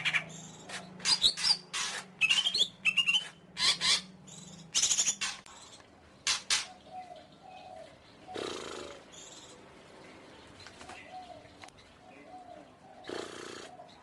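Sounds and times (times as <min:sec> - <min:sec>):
bird singing harsh rasps: 0:00.0 - 0:05.4.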